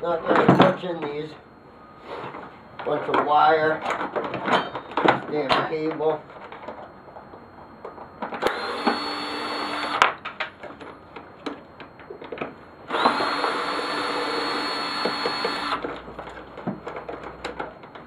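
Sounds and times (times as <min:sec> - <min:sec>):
power drill spinning: 0:08.4 - 0:10.0, 0:12.9 - 0:15.8
clicks and knocks of parts: 0:15.0 - 0:18.0.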